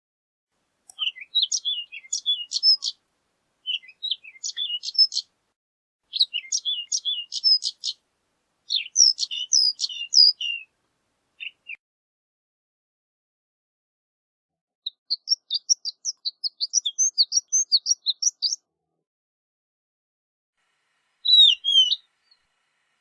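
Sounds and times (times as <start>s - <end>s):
bird singing high chirps: 0.9s - 3.0s, 3.6s - 5.3s, 6.1s - 8.0s, 8.7s - 10.7s, 11.4s - 11.8s, 14.9s - 18.6s, 21.2s - 22.4s.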